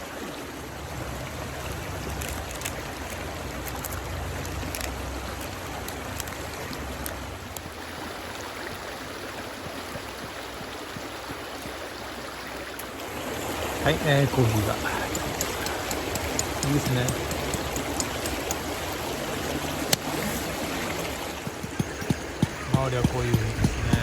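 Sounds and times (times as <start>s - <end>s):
stream rushing: 0.0s - 24.0s
sharp clicks: 14.6s - 19.1s.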